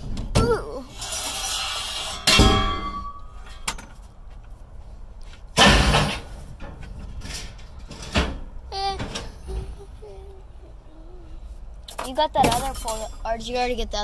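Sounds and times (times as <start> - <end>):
scrap metal clattering bangs: 0.0 - 4.1, 5.5 - 9.7.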